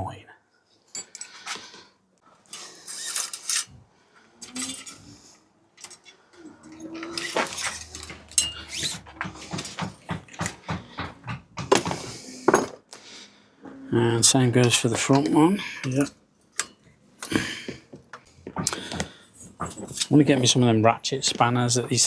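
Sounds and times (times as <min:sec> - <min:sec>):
metal tools clinking: 0:00.9 - 0:01.5, 0:02.5 - 0:03.8, 0:04.4 - 0:05.2, 0:05.8 - 0:09.8, 0:14.6 - 0:17.4, 0:19.4 - 0:20.6.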